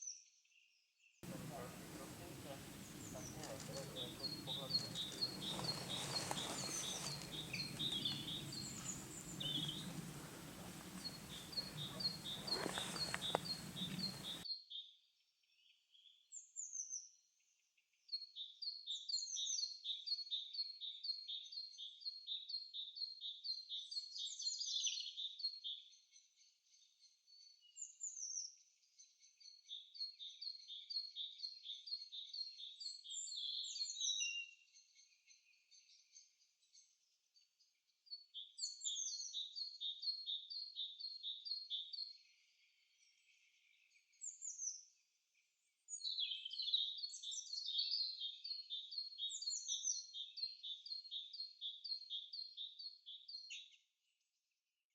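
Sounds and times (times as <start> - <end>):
birds chirping: 1.2 - 14.4
low background hum: 1.2 - 14.4.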